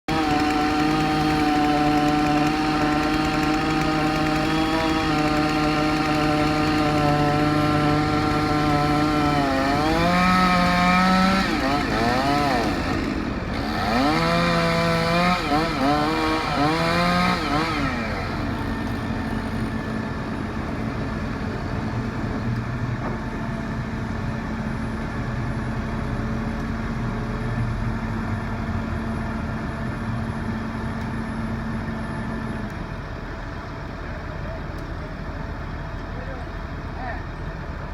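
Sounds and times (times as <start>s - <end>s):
chainsaw engine revving: 0.1s - 19.0s.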